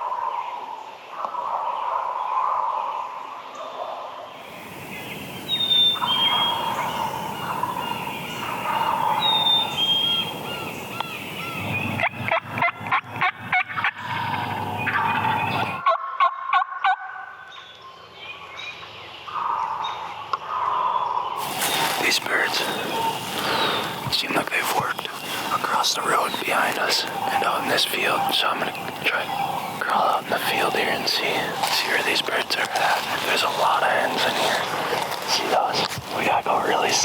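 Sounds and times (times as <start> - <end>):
songbirds chirping: 0.0 - 16.2, 17.1 - 37.0
wild turkey gobbling: 5.6 - 11.1, 12.0 - 17.2, 20.5 - 36.2.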